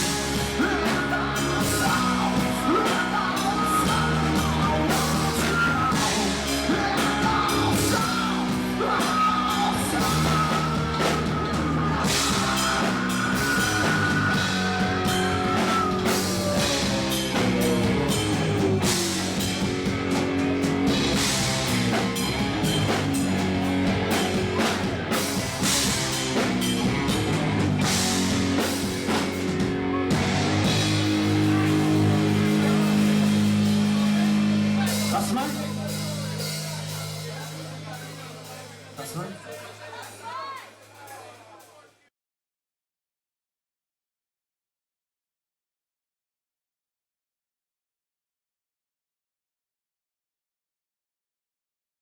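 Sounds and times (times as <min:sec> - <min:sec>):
person singing: 0:00.0 - 0:19.7
rock band playing live: 0:00.0 - 0:41.4.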